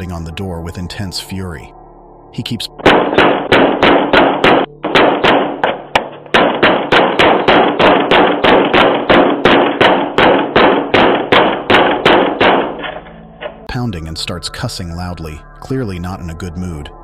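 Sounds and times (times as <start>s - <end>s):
fist pounding on door: 2.9s - 12.8s.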